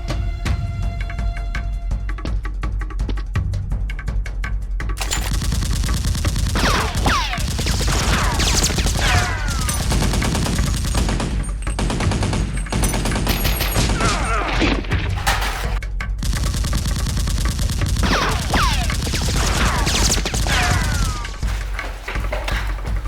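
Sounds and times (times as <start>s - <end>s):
rapid automatic gunfire: 5.0s - 14.5s, 15.2s - 21.6s.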